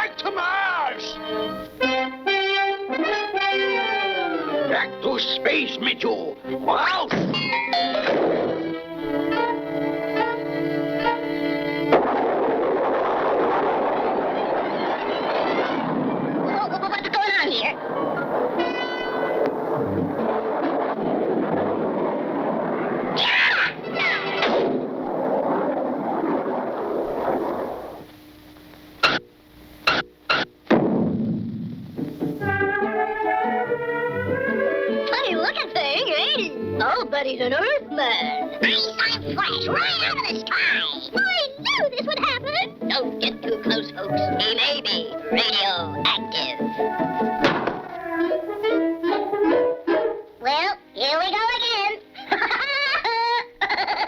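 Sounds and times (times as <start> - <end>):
cartoon brass music: 0.8 - 24.9, 32.0 - 51.0
sharp cracks: 7.0 - 32.5, 45.0 - 48.1
cartoon rumbling roar: 20.3 - 27.3.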